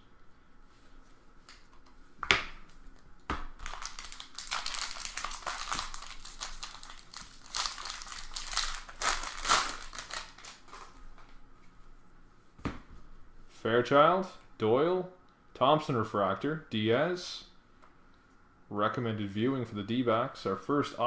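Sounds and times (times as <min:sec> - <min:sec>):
foil wrapper tearing and crinkling: 0:03.6 - 0:11.0.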